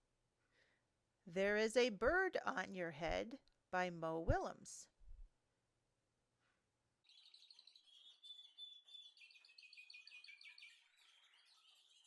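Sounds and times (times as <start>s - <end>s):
small birds chirping: 7.0s - 12.0s.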